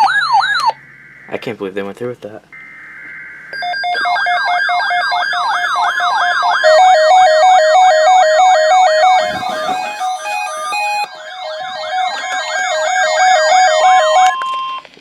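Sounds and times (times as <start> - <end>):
stepped beeping: 8.8 - 14.8
pulsing high-low beep: 8.9 - 13.2
rising siren-like sweep: 8.9 - 14.2.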